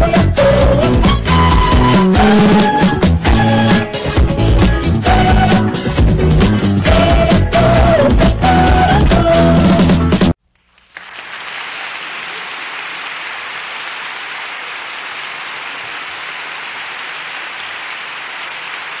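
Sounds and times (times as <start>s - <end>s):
music: 0.0s - 10.4s
crowd applause: 10.9s - 19.0s.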